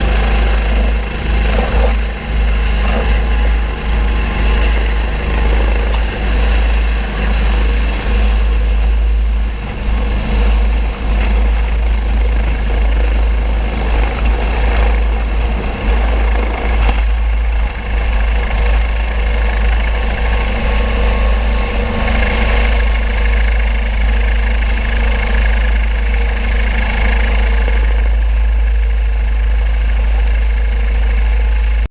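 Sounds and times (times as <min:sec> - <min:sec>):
helicopter low rumble: 0:00.0 - 0:31.9
helicopter turbine whine: 0:00.0 - 0:31.9.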